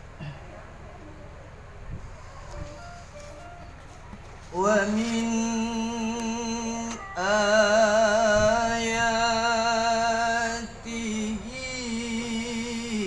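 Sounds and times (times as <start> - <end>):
man chanting melodic recitation: 4.5 - 13.0.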